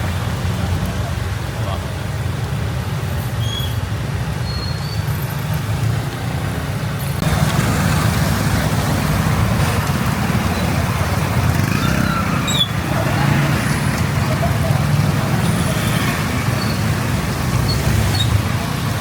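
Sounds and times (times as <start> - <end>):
road traffic rumble: 0.0 - 19.0.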